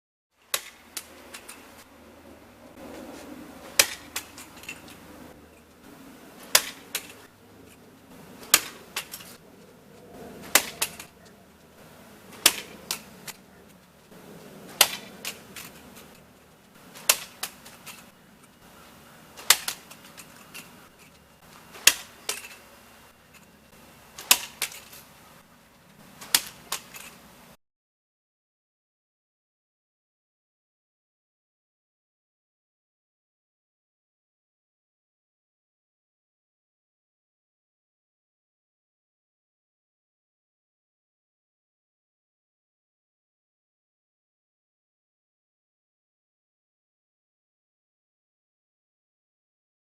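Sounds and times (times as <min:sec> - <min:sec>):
sharp impact cracks: 0:03.7 - 0:05.0, 0:06.4 - 0:07.3, 0:08.4 - 0:09.4, 0:10.4 - 0:11.2, 0:12.3 - 0:13.4, 0:14.7 - 0:16.2, 0:16.9 - 0:18.2, 0:19.4 - 0:20.7, 0:21.7 - 0:22.6, 0:24.2 - 0:25.0, 0:26.2 - 0:27.1.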